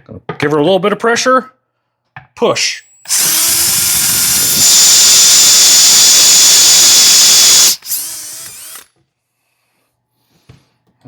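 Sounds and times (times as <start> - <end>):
electric drill cutting: 2.8 - 8.9.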